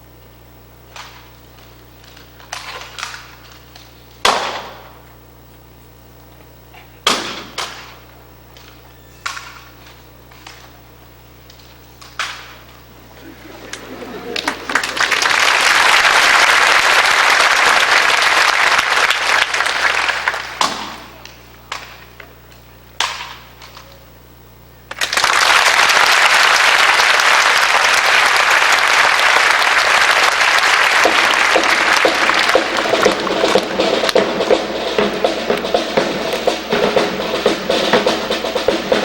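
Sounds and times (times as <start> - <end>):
audience applauding: 13.0 - 21.4, 24.9 - 39.0.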